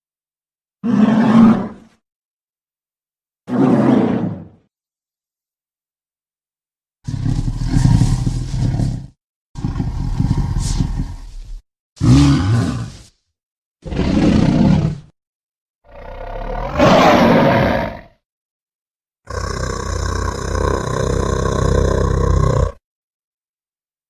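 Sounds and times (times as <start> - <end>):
monster roars: 7.1 - 11.4, 12.0 - 13.1, 13.8 - 15.1, 15.9 - 18.1, 19.3 - 22.8.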